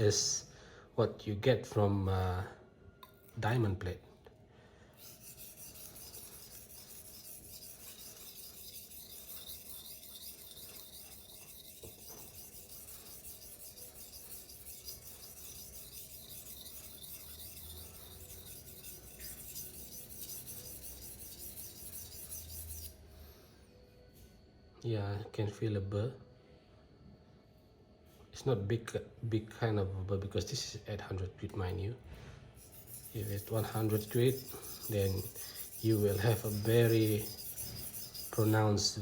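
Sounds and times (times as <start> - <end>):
knife scraping on whetstone: 5.0 - 23.0, 32.6 - 39.0.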